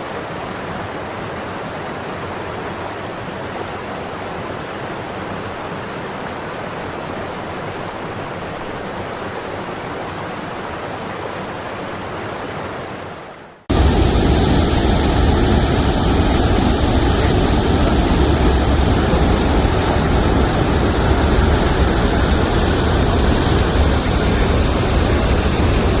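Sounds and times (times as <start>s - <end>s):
waterfall roaring: 0.0s - 26.0s.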